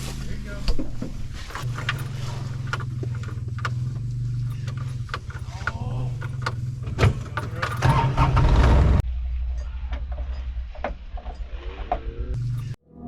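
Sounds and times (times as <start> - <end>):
clanks and rattles: 0.0 - 12.8
vehicle engine running low revs: 0.0 - 12.8.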